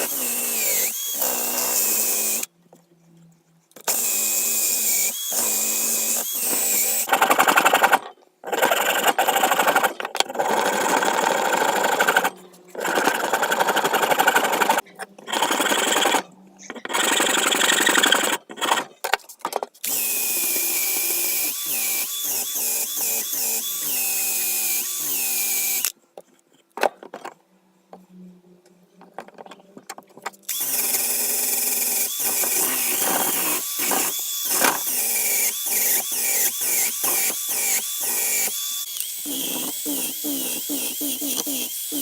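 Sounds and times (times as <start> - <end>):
electric power tool running: 0.0 - 2.5, 30.5 - 42.0.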